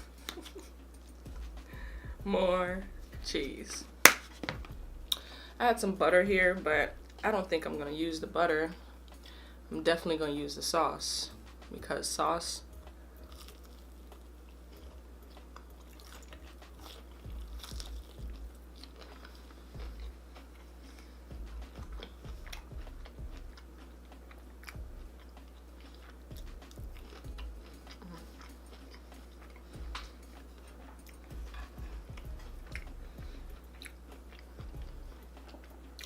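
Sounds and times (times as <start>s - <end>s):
biting and chewing food: 13.2s - 36.0s.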